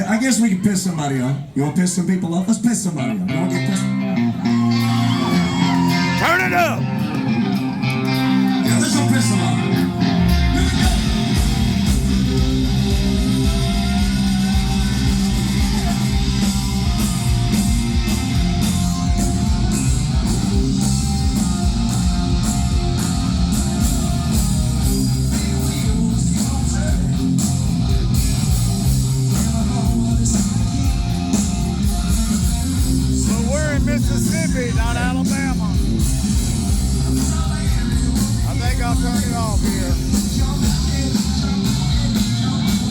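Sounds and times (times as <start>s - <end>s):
bass guitar: 3.0s - 42.9s
electric guitar: 3.0s - 42.9s
steady drumbeat: 10.6s - 42.9s.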